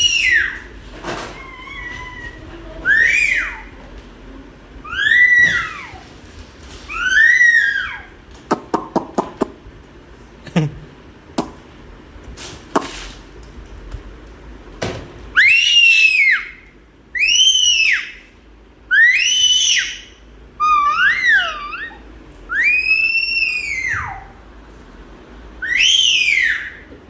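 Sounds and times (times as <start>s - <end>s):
toddler squealing: 0.0s - 0.7s, 1.3s - 3.7s, 4.8s - 6.0s, 6.9s - 8.2s, 15.4s - 16.6s, 18.9s - 24.4s, 25.6s - 26.9s.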